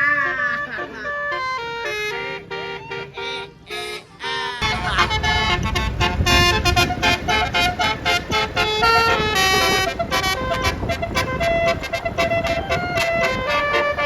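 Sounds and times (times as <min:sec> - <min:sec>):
multi-tone bus horn melody: 0:00.0 - 0:14.0
loud noise: 0:04.0 - 0:08.0.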